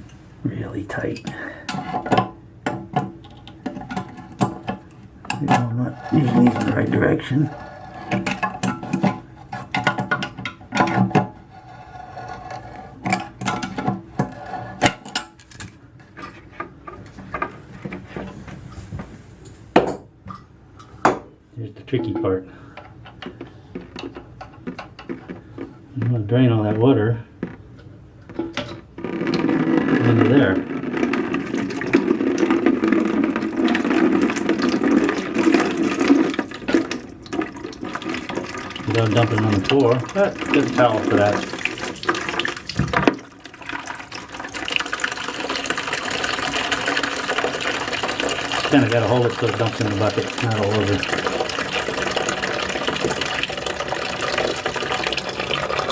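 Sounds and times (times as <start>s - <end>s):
water splashing into a bucket: 3.9s - 10.9s, 28.4s - 55.9s.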